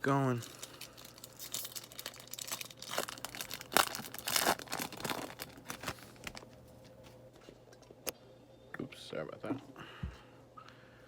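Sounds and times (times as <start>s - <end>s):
foil wrapper crinkling and tearing: 0.2s - 6.6s.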